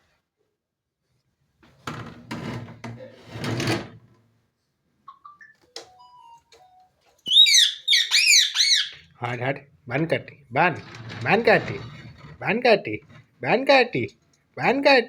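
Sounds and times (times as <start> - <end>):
parrot chirps: 7.3 - 9.1
scraping clatter: 10.8 - 13.3.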